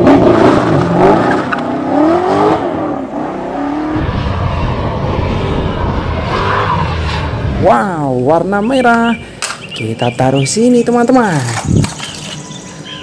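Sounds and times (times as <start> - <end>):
race car engine vroom: 0.0 - 8.2
low rough rumble: 2.6 - 9.4.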